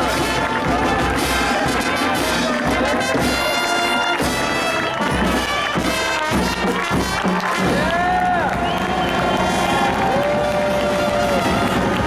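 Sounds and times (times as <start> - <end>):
steady drum beat: 0.0 - 12.0
trumpets and trombones: 0.0 - 12.0.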